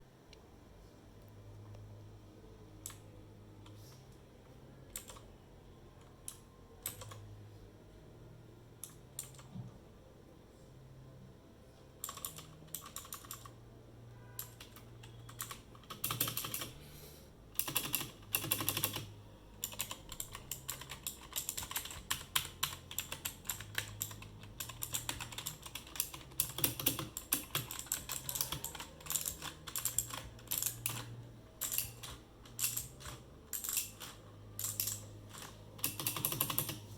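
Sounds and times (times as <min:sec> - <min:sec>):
mechanical keyboard typing: 0:04.9 - 0:05.3, 0:06.0 - 0:07.2, 0:08.8 - 0:09.5, 0:12.0 - 0:13.6, 0:14.4 - 0:16.8, 0:17.6 - 0:36.9.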